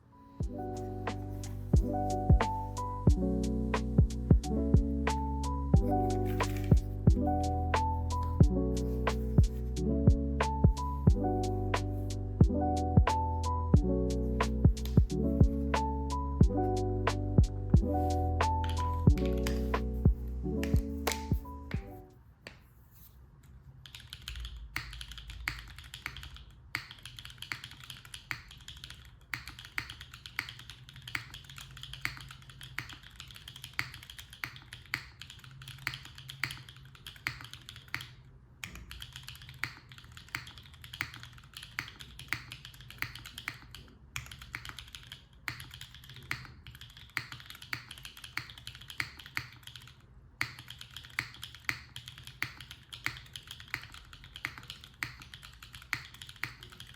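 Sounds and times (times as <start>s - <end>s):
mechanical keyboard typing: 18.4s - 20.0s, 23.8s - 56.9s.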